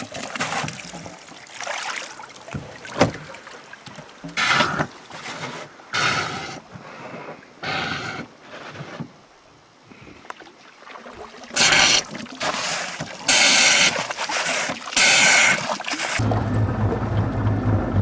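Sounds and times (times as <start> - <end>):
bilge pump sucking water: 0.0 - 6.6, 10.9 - 17.5
loud watery bursts: 11.2 - 16.3.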